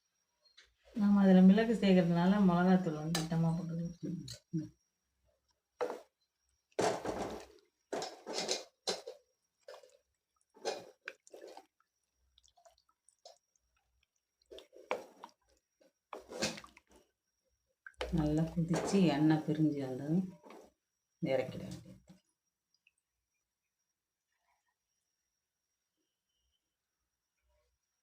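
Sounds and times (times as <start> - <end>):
spoon stirring wet curry in pot: 6.8 - 17.0, 17.8 - 19.4.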